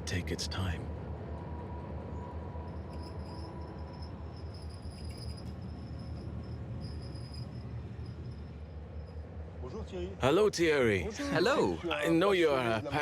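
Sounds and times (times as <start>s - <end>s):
train rumbling: 0.0s - 13.0s
high-pitched ringing tone: 2.6s - 9.2s.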